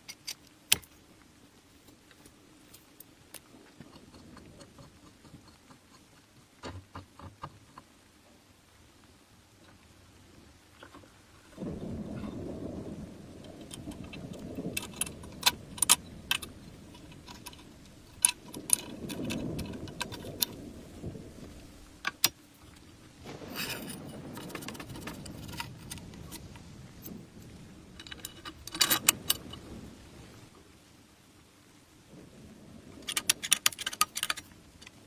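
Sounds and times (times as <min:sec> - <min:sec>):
low rumble of handling noise: 0:00.0 - 0:08.1, 0:09.6 - 0:30.6
metal tools clinking: 0:13.5 - 0:20.6, 0:23.6 - 0:26.4, 0:28.0 - 0:29.6.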